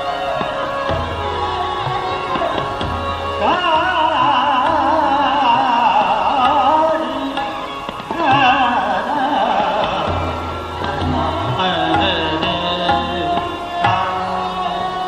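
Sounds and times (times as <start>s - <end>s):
steady drone: 0.0s - 15.0s
man singing classical ornamented phrases: 3.4s - 15.0s.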